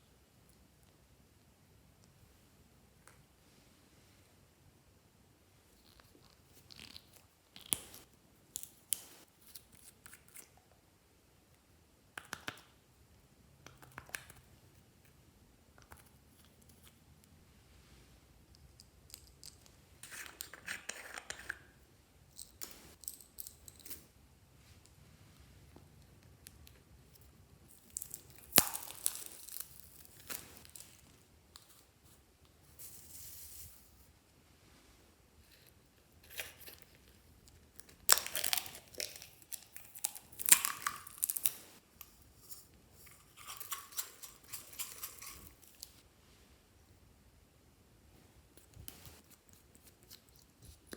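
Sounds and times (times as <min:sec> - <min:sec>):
slime crackling and popping: 0:27.7 - 0:31.0, 0:37.8 - 0:41.8.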